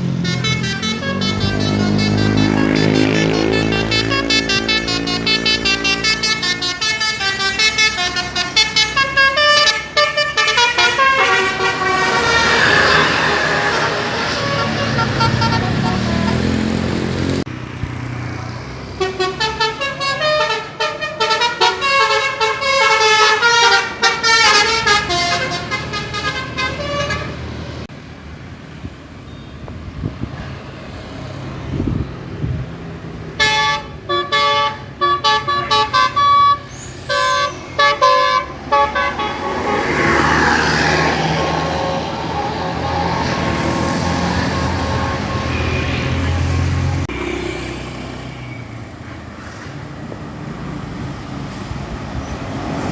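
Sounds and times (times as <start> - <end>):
multi-tone bus air horns: 0.0 - 17.4, 19.0 - 27.9, 33.3 - 47.1
bus engines running: 0.0 - 52.9.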